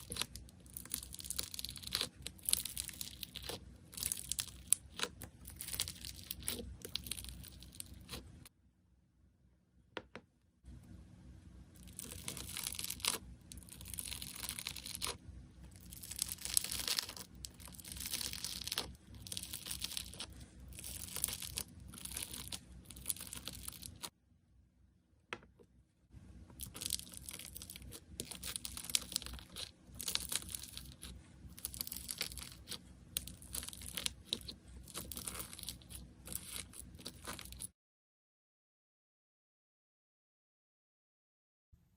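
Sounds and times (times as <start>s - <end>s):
slime crackling: 0.0s - 8.5s, 11.8s - 24.1s, 26.5s - 37.7s.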